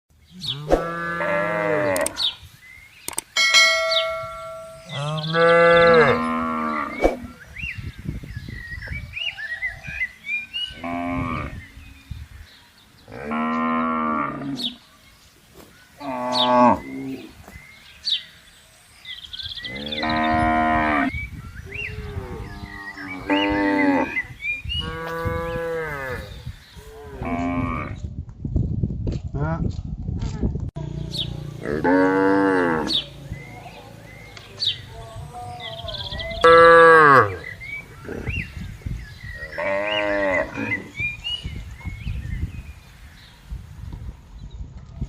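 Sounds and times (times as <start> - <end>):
cattle mooing: 0.5 - 2.2, 4.8 - 7.0, 31.6 - 33.1
ringing tone: 3.4 - 5.2.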